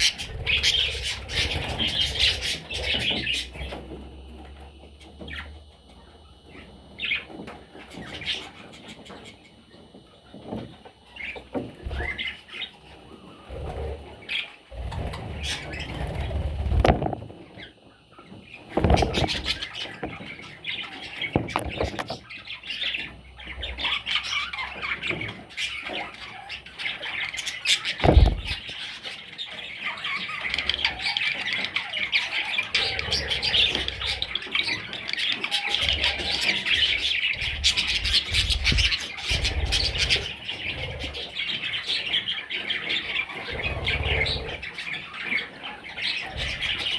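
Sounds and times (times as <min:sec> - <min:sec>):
budgerigars chirping: 0:00.0 - 0:04.0, 0:04.9 - 0:09.5, 0:11.1 - 0:16.9, 0:18.5 - 0:46.9
thumps and knocks: 0:21.3 - 0:22.2, 0:28.0 - 0:28.8.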